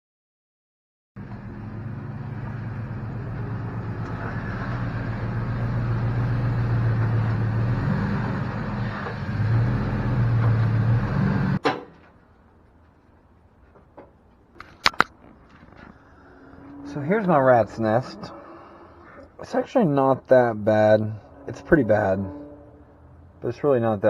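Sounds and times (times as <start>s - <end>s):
pickup truck engine running: 1.2s - 11.6s.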